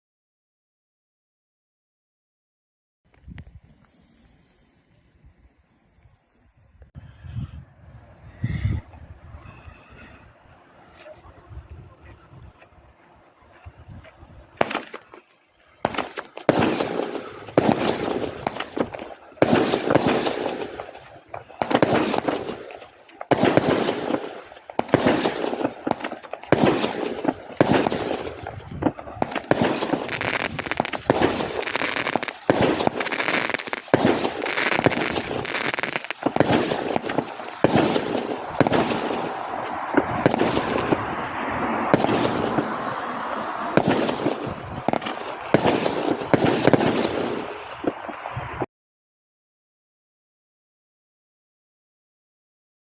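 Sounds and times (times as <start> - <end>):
fireworks cake shots: 8.5 - 48.2.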